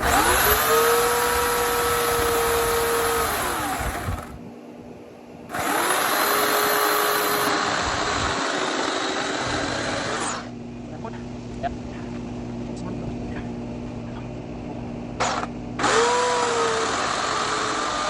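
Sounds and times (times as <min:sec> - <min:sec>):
electric chainsaw cutting log: 0:00.0 - 0:04.4, 0:05.5 - 0:10.5, 0:15.2 - 0:18.0.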